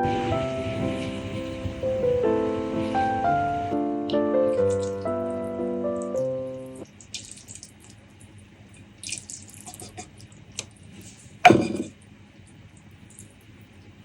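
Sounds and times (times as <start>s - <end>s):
wet eating clicks and smacks: 6.8s - 8.4s.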